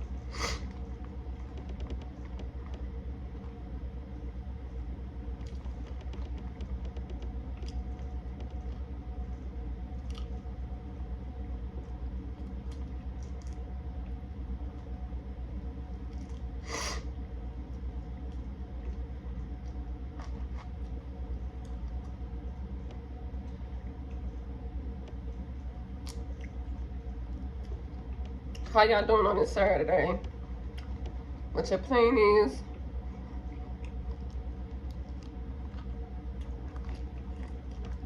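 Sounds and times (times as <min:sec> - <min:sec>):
steady low hum: 0:00.0 - 0:38.0
chewing clicks and smacks: 0:01.0 - 0:03.6, 0:05.4 - 0:08.9, 0:10.0 - 0:10.6, 0:11.8 - 0:14.2, 0:16.1 - 0:16.5, 0:25.0 - 0:28.7, 0:30.2 - 0:31.3, 0:33.1 - 0:38.0.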